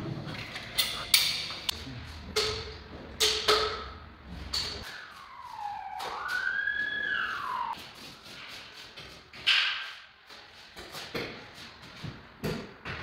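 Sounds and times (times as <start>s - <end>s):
whistle-like sliding tone: 4.8s - 7.8s.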